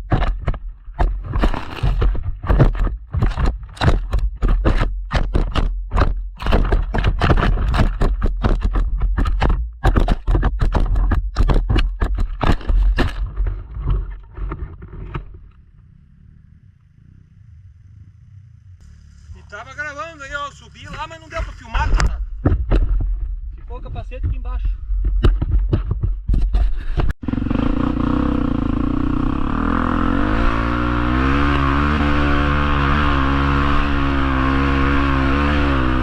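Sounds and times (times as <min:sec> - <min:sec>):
knocks and scrapes: 0:00.0 - 0:15.7, 0:20.8 - 0:27.2
heavy low rumble: 0:15.3 - 0:25.2.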